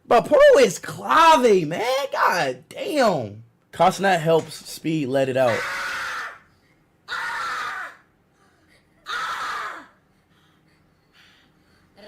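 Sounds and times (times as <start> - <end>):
person screaming: 5.5 - 6.4, 7.1 - 8.0, 9.1 - 10.0.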